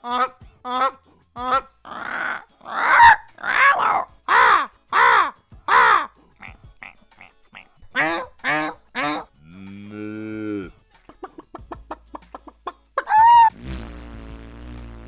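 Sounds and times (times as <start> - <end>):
man imitating crow caws: 0.0 - 10.8, 13.0 - 13.5.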